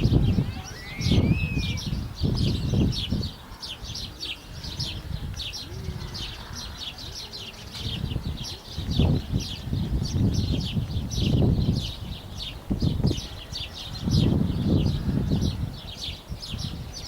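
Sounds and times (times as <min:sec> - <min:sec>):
small birds chirping rapidly: 0:00.0 - 0:17.0.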